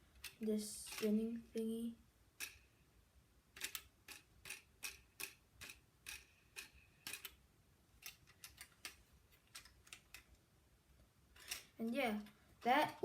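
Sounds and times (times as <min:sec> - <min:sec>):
plastic toy part clicking: 0:00.1 - 0:01.1, 0:02.4 - 0:02.7, 0:03.5 - 0:07.4, 0:08.0 - 0:10.4, 0:11.4 - 0:11.8.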